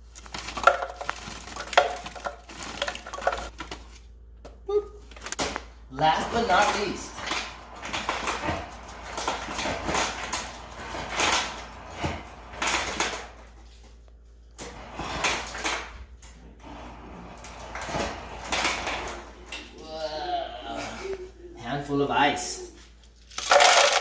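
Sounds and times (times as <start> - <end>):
kitchen scraping and rustling: 0.0 - 4.1, 5.0 - 19.8.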